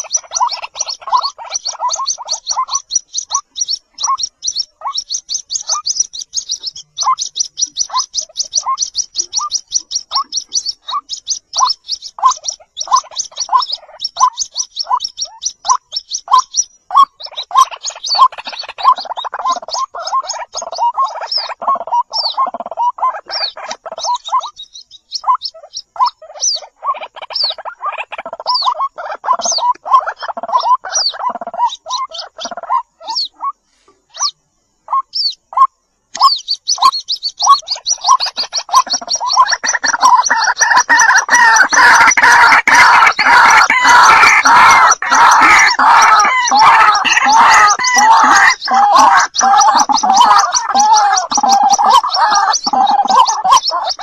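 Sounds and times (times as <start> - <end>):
bird chicks chirping: 0.0 - 54.0.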